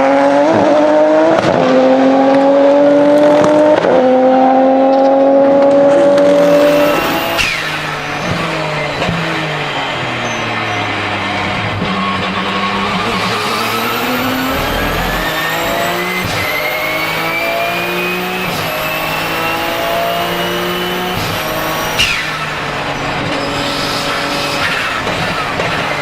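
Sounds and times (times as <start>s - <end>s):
race car engine accelerating: 0.0s - 26.0s
turbo whistle: 12.2s - 19.6s.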